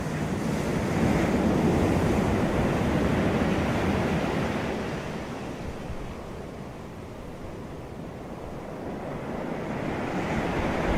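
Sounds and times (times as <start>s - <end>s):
sea waves breaking on shore: 8.3s - 10.9s.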